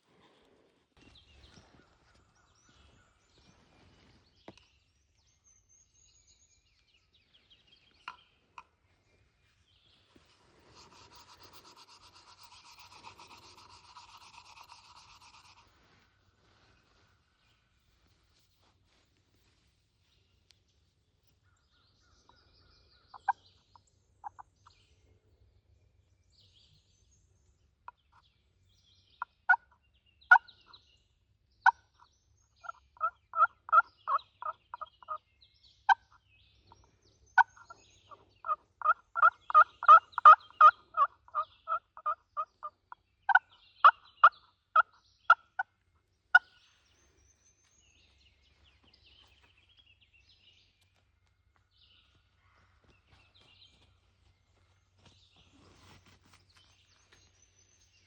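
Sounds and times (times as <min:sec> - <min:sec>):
turkey yelping: 0:38.4 - 0:42.7.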